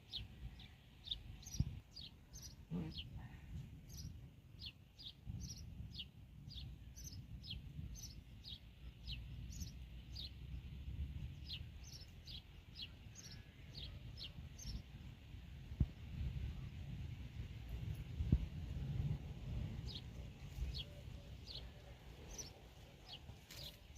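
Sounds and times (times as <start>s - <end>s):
sparrows chirping: 0.0s - 3.2s, 3.8s - 15.0s, 19.7s - 23.9s.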